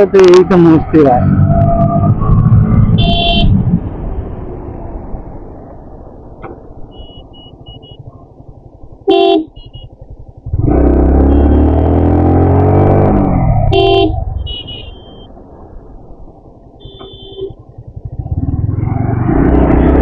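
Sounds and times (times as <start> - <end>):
motorcycle horn toots: 3.0 - 3.6, 9.0 - 9.9, 13.7 - 15.3, 16.8 - 17.6
motorcycle engine running: 7.8 - 12.7, 16.8 - 18.9.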